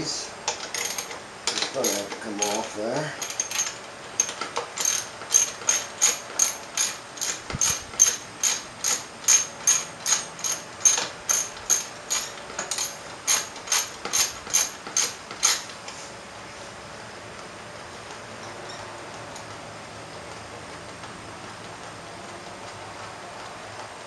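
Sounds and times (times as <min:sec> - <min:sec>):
socket ratchet clicking: 0:03.2 - 0:15.7.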